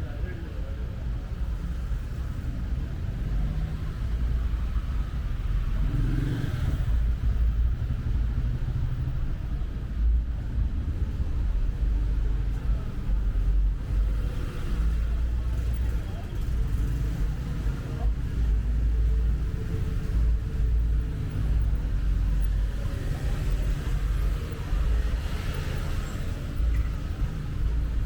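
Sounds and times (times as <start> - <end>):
traffic engines rumbling: 0.0 - 28.0
vehicle engine revving: 5.5 - 7.4.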